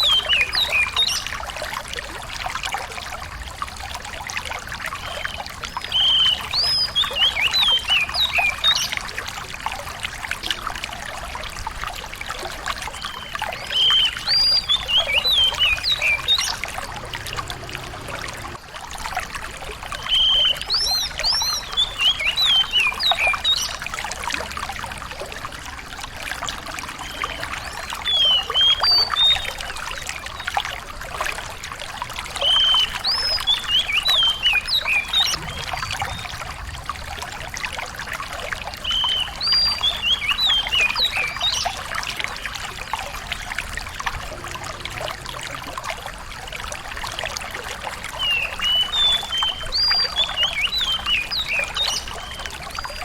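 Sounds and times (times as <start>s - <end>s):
trickle of flowing water: 0.0s - 53.0s
songbird whistling: 13.0s - 18.5s, 38.8s - 41.8s.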